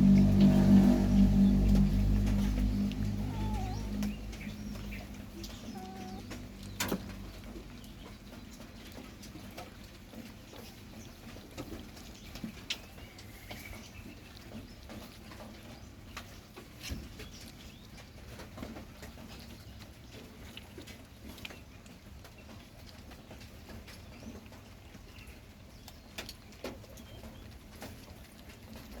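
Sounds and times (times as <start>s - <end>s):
low background rumble: 0.0s - 9.2s
puppy chewing and licking: 0.0s - 29.0s.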